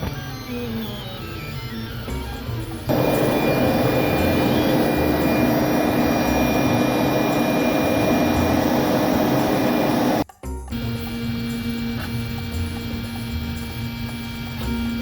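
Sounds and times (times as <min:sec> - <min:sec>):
dust vacuum running: 0:02.9 - 0:10.2
router spindle cutting: 0:02.9 - 0:10.2.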